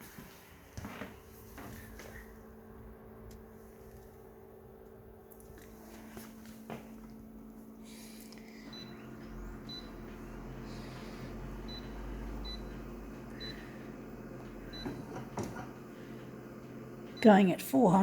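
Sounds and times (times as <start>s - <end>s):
scanner motor rumble: 1.3s - 18.0s.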